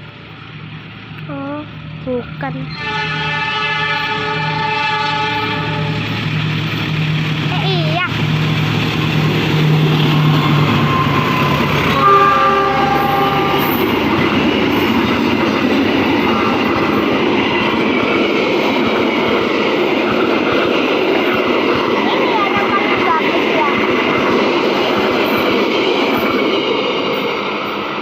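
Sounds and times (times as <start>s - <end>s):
train cars rumbling and rattling: 0.0s - 28.0s
train horn: 2.7s - 6.2s, 10.1s - 14.0s.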